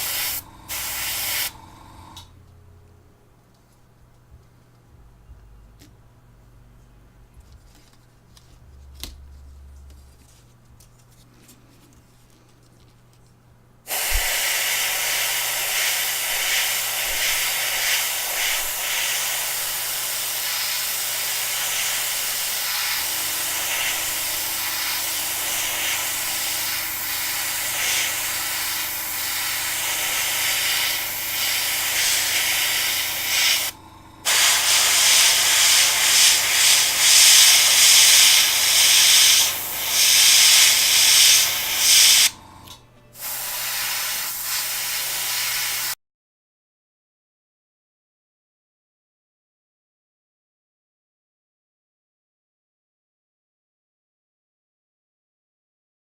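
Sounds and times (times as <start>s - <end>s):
spray paint hissing: 0.0s - 1.8s, 13.9s - 42.4s, 43.2s - 46.0s.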